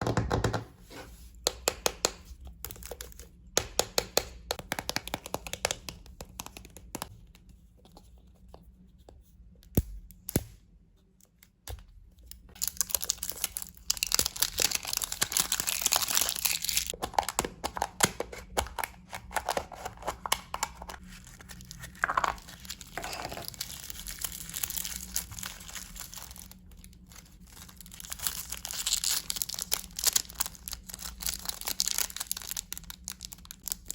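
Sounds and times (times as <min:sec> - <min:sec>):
wrappers crinkling and tearing: 0:12.5 - 0:17.0, 0:21.0 - 0:33.9.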